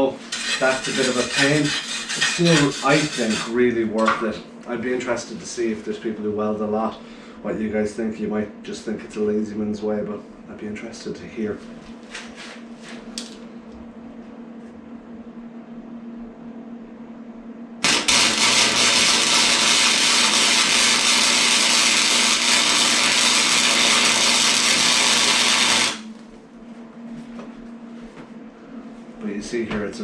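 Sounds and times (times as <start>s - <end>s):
welder arc hissing: 17.8s - 26.1s.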